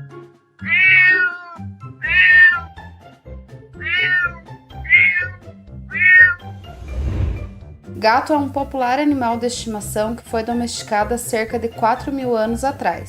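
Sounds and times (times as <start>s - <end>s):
background music: 0.0s - 13.0s
cat meowing: 0.6s - 2.7s, 3.8s - 6.4s.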